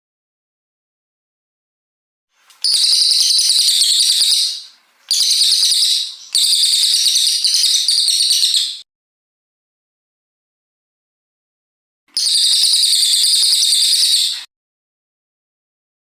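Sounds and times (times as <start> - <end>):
songbird singing rapid high notes: 2.5 - 8.8, 12.2 - 14.5.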